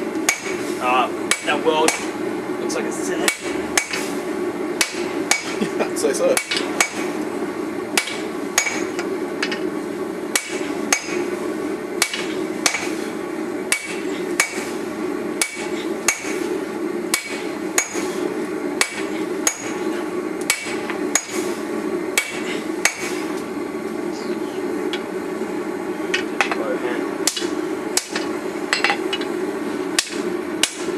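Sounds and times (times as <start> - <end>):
steady low hum: 0.0 - 30.9
hammer striking hot steel on anvil: 0.2 - 0.7, 1.3 - 2.2, 3.2 - 4.2, 4.8 - 5.6, 6.4 - 7.2, 8.0 - 9.7, 10.3 - 11.3, 12.0 - 13.1, 13.7 - 14.8, 15.4 - 16.5, 17.1 - 18.2, 18.8 - 21.6, 22.2 - 23.5, 26.1 - 26.6, 27.2 - 29.3, 29.9 - 30.9.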